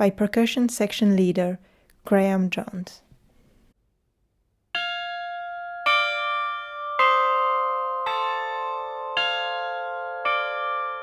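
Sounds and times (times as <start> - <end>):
orchestral bells ringing: 4.8 - 11.0.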